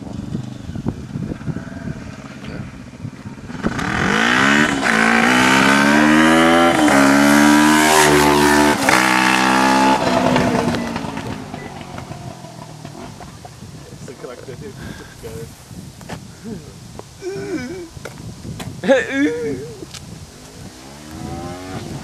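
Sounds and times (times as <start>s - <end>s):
racing lawnmower engine accelerating: 3.5s - 13.4s.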